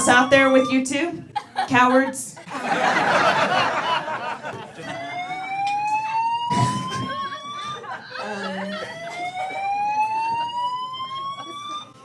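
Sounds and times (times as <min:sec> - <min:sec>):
fire alarm whoop tones: 0:00.0 - 0:01.0, 0:04.8 - 0:12.0.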